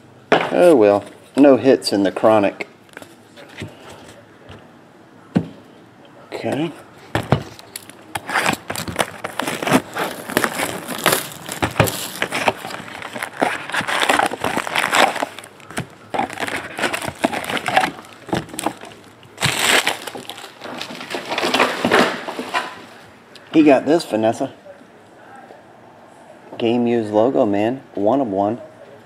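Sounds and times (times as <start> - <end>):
cards being handled: 7.4 - 20.5
wrappers tearing and crinkling: 7.5 - 22.8.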